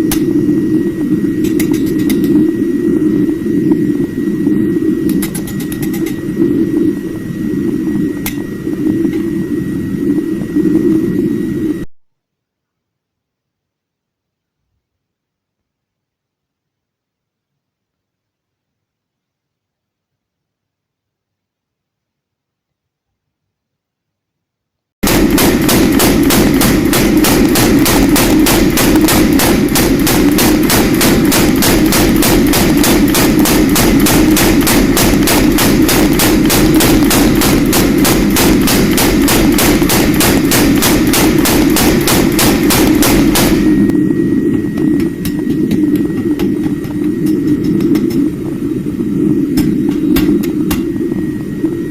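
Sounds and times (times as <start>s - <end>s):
power hammer blows: 25.0s - 48.2s
motor humming: 25.0s - 51.9s.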